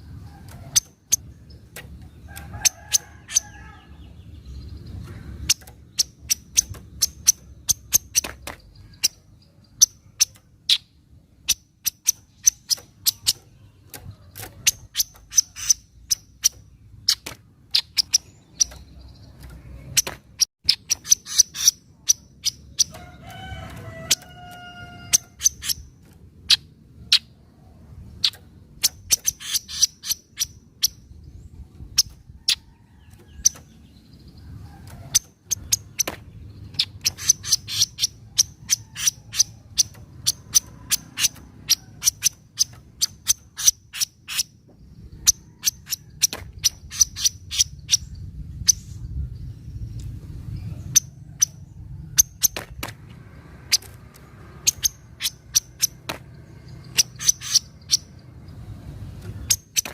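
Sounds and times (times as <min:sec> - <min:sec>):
bird chattering high ticks: 0:05.4 - 0:09.2, 0:09.8 - 0:23.0, 0:24.1 - 0:27.3, 0:28.2 - 0:31.0, 0:35.1 - 0:44.6, 0:53.7 - 0:56.2, 0:56.8 - 0:58.3.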